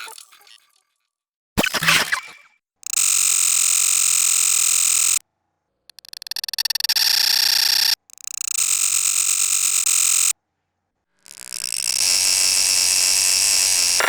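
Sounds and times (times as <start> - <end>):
digital glitch stuttering buzz: 2.9 - 5.2, 6.0 - 10.3, 11.2 - 14.0.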